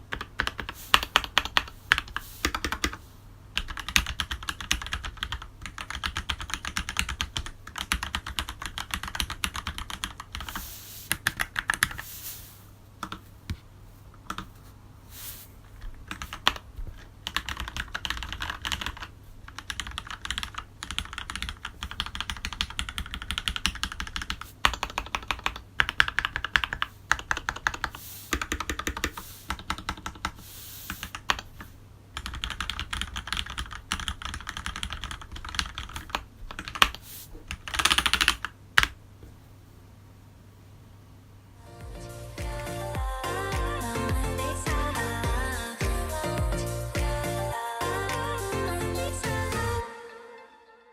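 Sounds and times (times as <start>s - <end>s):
mechanical keyboard typing: 0.0s - 3.0s, 3.6s - 12.0s, 16.0s - 30.4s, 32.2s - 39.0s.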